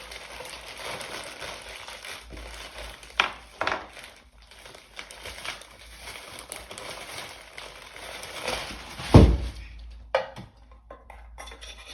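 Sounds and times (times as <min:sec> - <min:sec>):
crinkling and crunching: 0:00.0 - 0:10.0.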